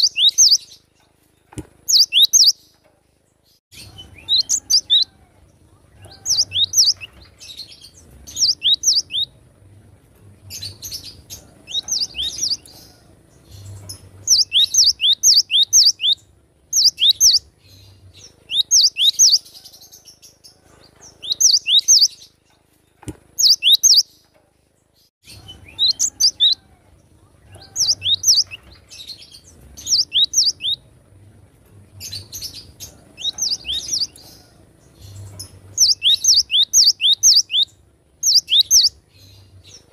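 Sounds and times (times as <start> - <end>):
bird whistling song: 0.0 - 0.8, 1.9 - 2.6, 6.0 - 9.3, 11.7 - 13.0, 13.6 - 16.2, 16.8 - 17.5, 18.5 - 19.5, 21.2 - 22.2, 23.4 - 24.1, 25.4 - 26.6, 27.5 - 29.1, 29.8 - 30.8, 35.1 - 39.8.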